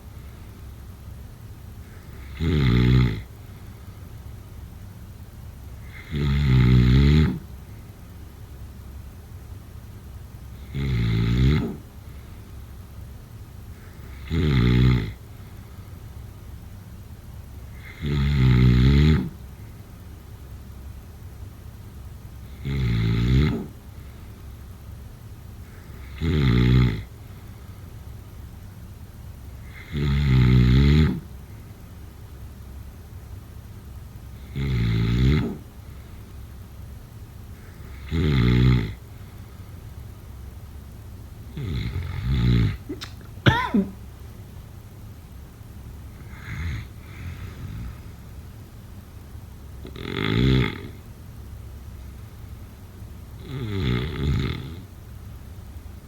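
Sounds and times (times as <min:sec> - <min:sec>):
person snoring: 0:01.9 - 0:03.3, 0:13.8 - 0:15.2, 0:17.8 - 0:19.4, 0:34.5 - 0:35.6, 0:49.9 - 0:51.0, 0:53.4 - 0:54.8.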